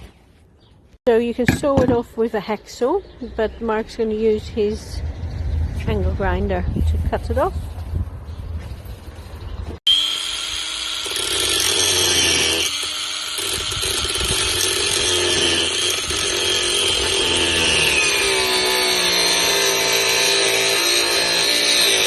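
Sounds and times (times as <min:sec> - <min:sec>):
angle grinder grinding metal: 0:09.9 - 0:22.0.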